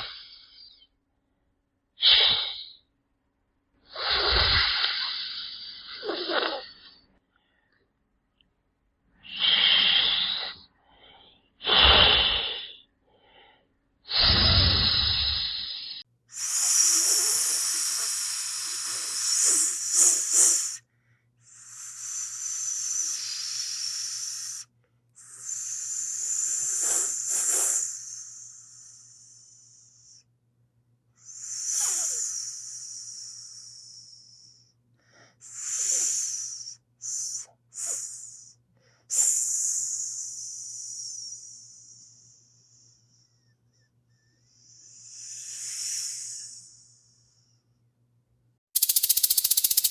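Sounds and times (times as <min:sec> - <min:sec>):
snake hissing: 0:03.9 - 0:07.0, 0:09.3 - 0:10.6, 0:11.6 - 0:12.8, 0:14.1 - 0:20.8, 0:21.5 - 0:29.4, 0:31.4 - 0:34.5, 0:44.7 - 0:46.8, 0:48.8 - 0:49.9.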